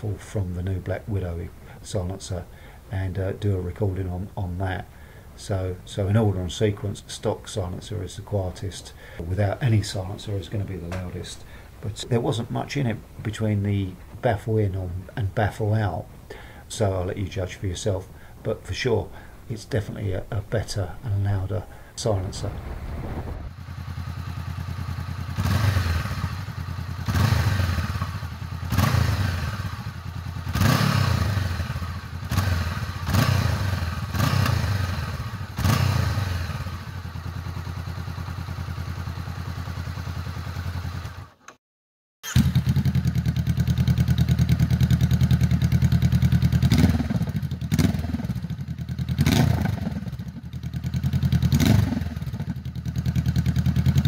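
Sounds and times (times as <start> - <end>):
motorcycle engine idling and revving: 23.5 - 41.5, 42.2 - 54.0.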